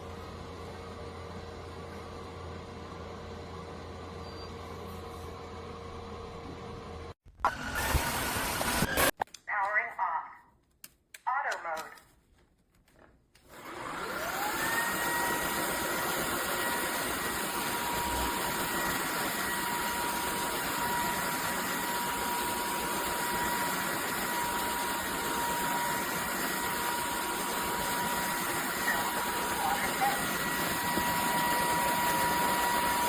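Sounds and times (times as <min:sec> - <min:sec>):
vacuum cleaner motor whining: 0:07.5 - 0:09.2, 0:13.5 - 0:33.0.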